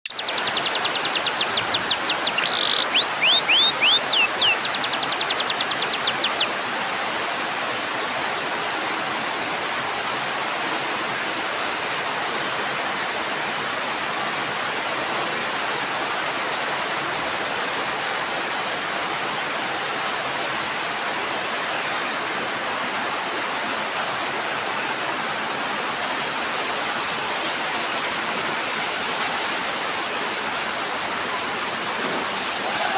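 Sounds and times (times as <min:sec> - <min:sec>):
rapid high-pitched chirps: 0:00.0 - 0:06.6
steady rain: 0:00.1 - 0:32.9.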